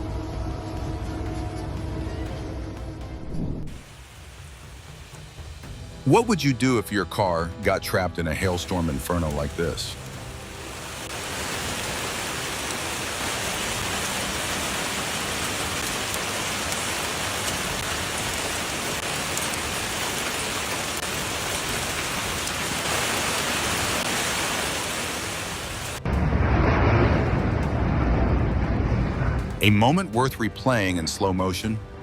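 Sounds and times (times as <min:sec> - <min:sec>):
hail and rain hitting a car: 0:11.1 - 0:26.0.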